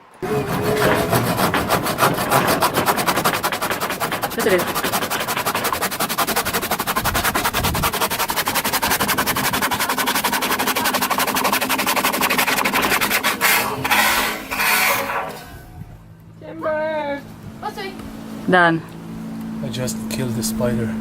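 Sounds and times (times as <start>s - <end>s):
power saw cutting wood: 0.2s - 15.7s.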